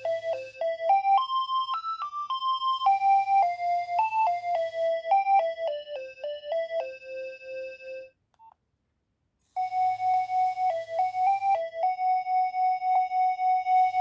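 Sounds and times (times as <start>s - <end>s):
ringtone quick repeated notes: 0.0s - 8.0s
electronic ringtone melody: 0.0s - 8.1s, 9.6s - 14.0s.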